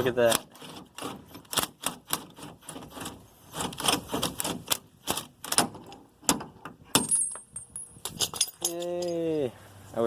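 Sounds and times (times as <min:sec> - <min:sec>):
metal clicks and clinks: 0:07.0 - 0:09.3.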